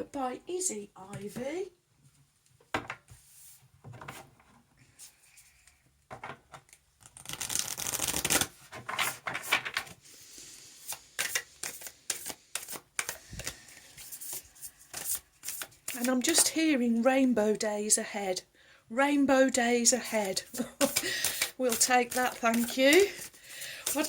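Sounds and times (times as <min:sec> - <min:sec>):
cards being shuffled by hand: 0:07.0 - 0:10.0, 0:10.8 - 0:16.5, 0:20.1 - 0:24.0.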